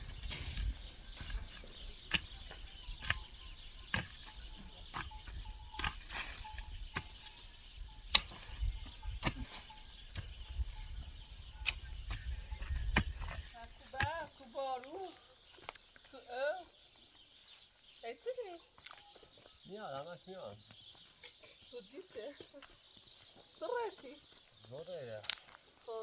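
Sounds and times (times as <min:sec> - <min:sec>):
hand tool striking: 0:00.0 - 0:11.0, 0:11.6 - 0:14.3
faint outdoor background: 0:00.0 - 0:26.0.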